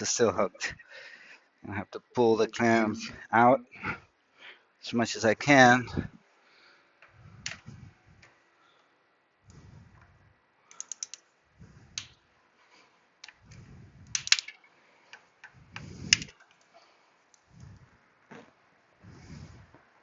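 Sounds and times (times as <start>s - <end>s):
metal hose clamp clicking: 10.7s - 11.2s.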